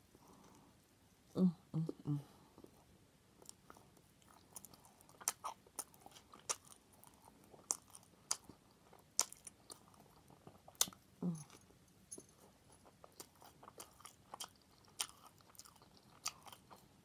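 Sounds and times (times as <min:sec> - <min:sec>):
person humming: 0:01.4 - 0:02.4, 0:11.2 - 0:11.5.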